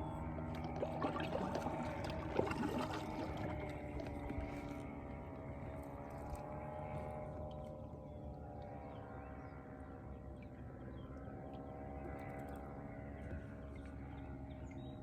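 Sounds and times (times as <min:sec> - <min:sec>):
humming drone of held tones: 0:00.0 - 0:15.0
water splashing and dripping: 0:00.6 - 0:04.6.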